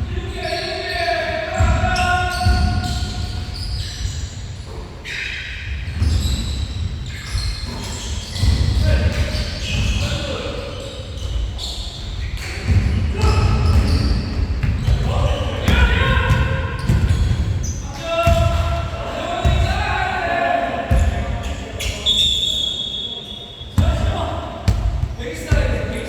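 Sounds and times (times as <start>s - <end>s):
basketball bouncing on a court: 12.4s - 19.9s, 20.9s - 21.4s, 23.8s - 25.9s
players calling out: 12.4s - 26.0s.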